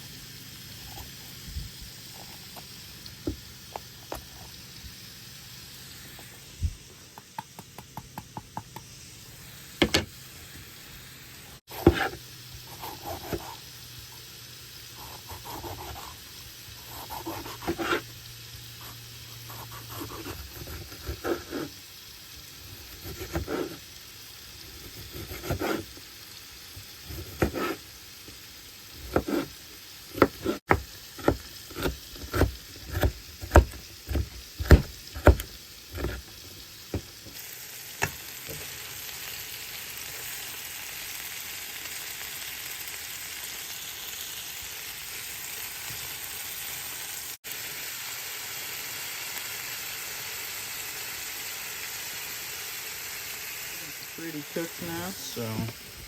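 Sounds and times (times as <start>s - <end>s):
chicken sizzling on grill: 0.0s - 56.0s.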